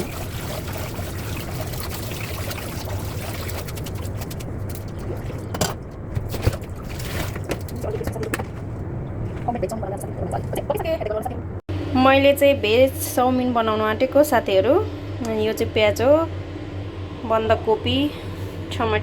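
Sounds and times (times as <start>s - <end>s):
water pouring and splashing: 0.0s - 8.3s.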